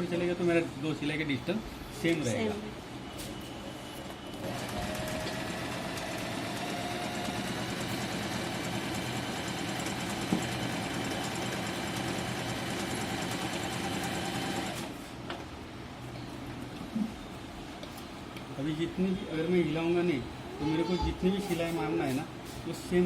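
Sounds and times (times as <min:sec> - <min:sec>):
sewing machine running: 0:04.3 - 0:14.9.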